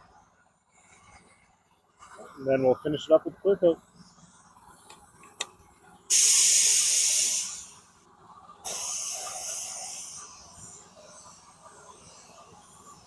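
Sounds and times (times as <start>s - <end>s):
spray can hissing: 6.1s - 7.8s, 8.7s - 10.7s.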